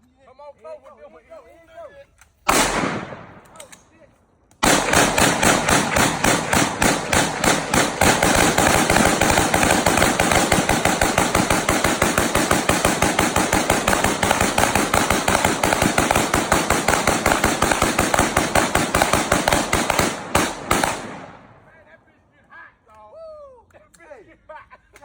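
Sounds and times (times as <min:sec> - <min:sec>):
rapid overlapping gunshots: 0:02.5 - 0:03.8, 0:04.6 - 0:22.0.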